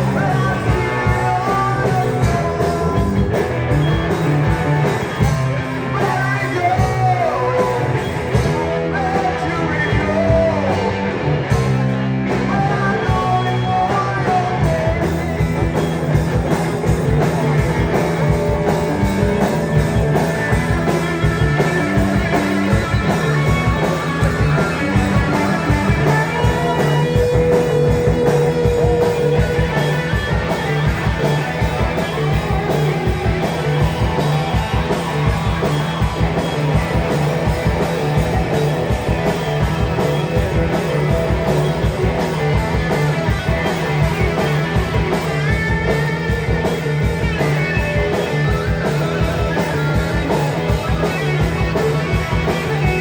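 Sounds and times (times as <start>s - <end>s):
bass line: 0.0s - 53.0s
driving drum beat: 0.0s - 53.0s
electric guitar: 0.0s - 53.0s.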